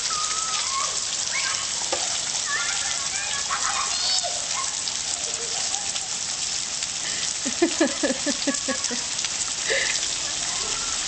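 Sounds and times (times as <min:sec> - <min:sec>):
child's voice: 0:00.0 - 0:06.2, 0:10.2 - 0:11.0
heavy rain pouring: 0:00.0 - 0:11.0.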